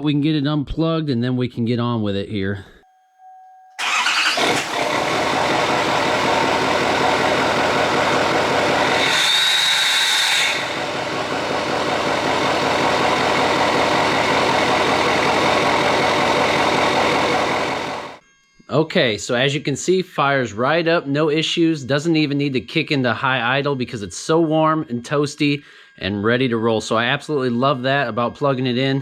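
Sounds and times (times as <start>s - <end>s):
diesel engine starting and idling: 3.8s - 18.2s
high whistle: 8.8s - 11.1s.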